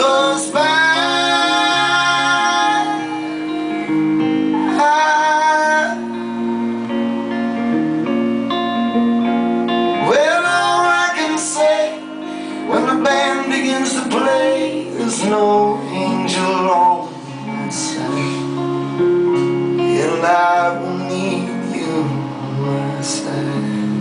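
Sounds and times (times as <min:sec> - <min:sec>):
wordless singing: 0:00.0 - 0:03.7, 0:10.0 - 0:18.6, 0:19.9 - 0:23.8
guitar chords: 0:00.0 - 0:24.0
live folk-rock band: 0:00.0 - 0:24.0.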